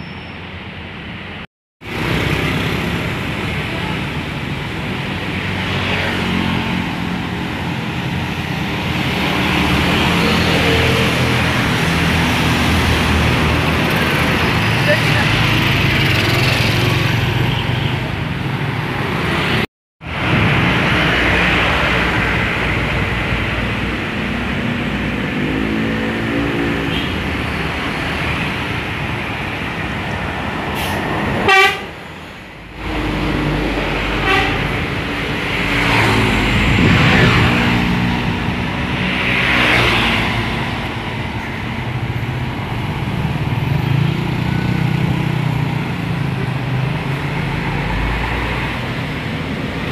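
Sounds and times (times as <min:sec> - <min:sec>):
traffic noise: 0:00.0 - 0:49.9
engine noise: 0:01.8 - 0:49.9
bus musical horn: 0:31.4 - 0:32.0, 0:34.0 - 0:34.9.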